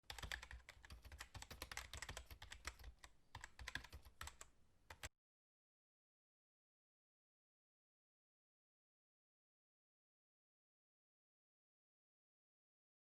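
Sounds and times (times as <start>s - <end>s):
faint rapid clicking: 0.1s - 5.1s.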